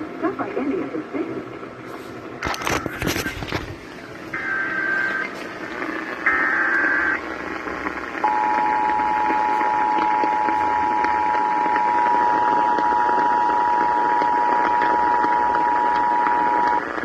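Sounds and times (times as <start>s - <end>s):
two-tone attention signal: 8.2s - 16.8s.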